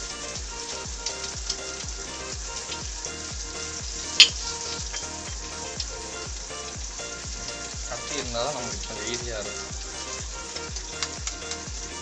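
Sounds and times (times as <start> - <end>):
background music with beat: 0.0 - 12.0
eggs sizzling in a pan: 0.0 - 12.0
utensil clinking on pan: 4.2 - 5.4.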